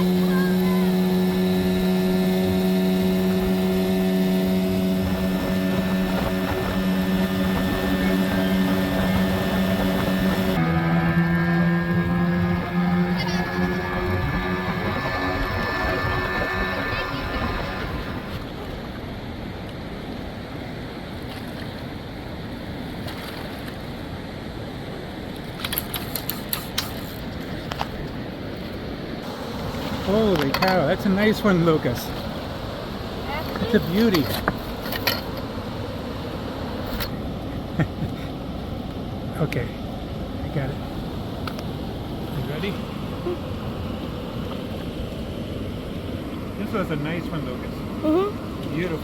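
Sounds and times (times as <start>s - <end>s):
river water rushing: 0.0s - 12.5s, 27.2s - 37.5s
wind on microphone: 0.0s - 19.2s
boat motor droning: 0.0s - 20.4s, 27.6s - 49.0s.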